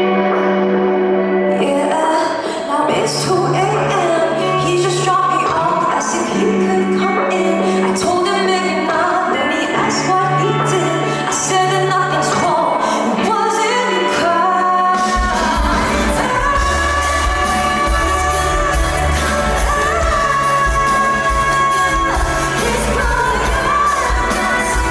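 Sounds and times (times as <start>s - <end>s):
live pop band: 0.0s - 24.9s
woman singing: 0.0s - 24.9s
heavy bass and drums: 15.0s - 24.9s.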